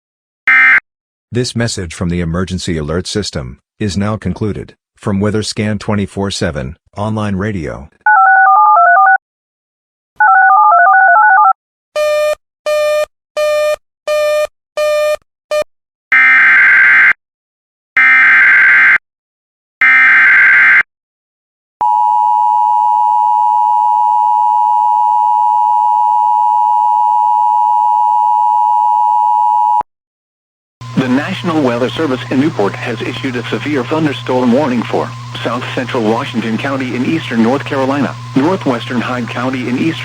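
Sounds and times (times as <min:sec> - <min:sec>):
screeching digital bursts: 0:30.8 - 0:40.0.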